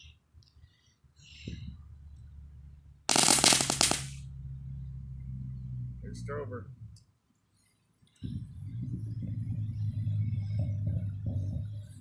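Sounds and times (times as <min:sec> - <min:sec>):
firework crackling pops: 0:03.1 - 0:04.2.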